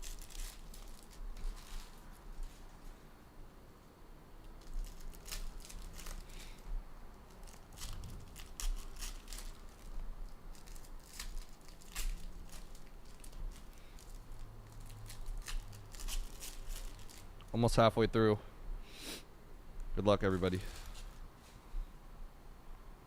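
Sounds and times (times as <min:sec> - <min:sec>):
wrappers crinkling and tearing: 0:00.0 - 0:02.9, 0:04.4 - 0:17.5, 0:20.3 - 0:21.2.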